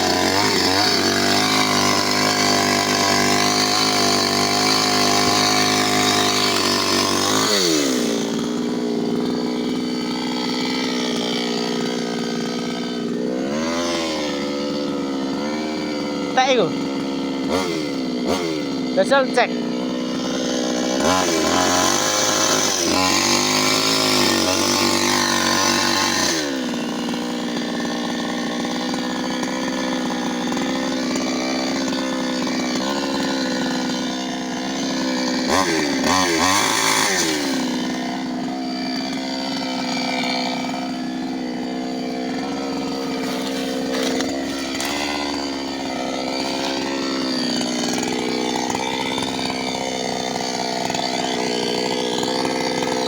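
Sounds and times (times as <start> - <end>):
chainsaw running: 0.0 - 53.0.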